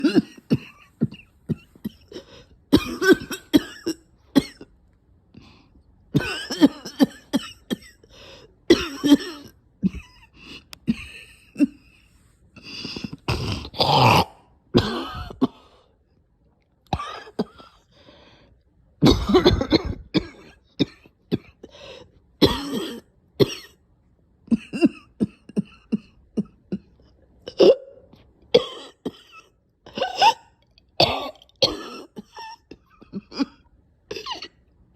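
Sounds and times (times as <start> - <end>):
person coughing: 0.0 - 4.7, 6.2 - 8.1, 8.7 - 11.9, 12.6 - 15.8, 16.9 - 17.8, 19.0 - 21.8, 22.4 - 23.8, 24.5 - 26.9, 27.5 - 34.6.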